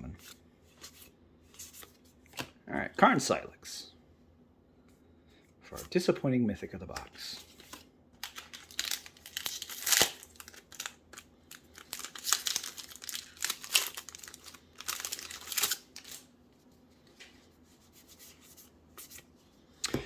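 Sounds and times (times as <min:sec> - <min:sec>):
foil wrapper crinkling and tearing: 0:08.2 - 0:16.3.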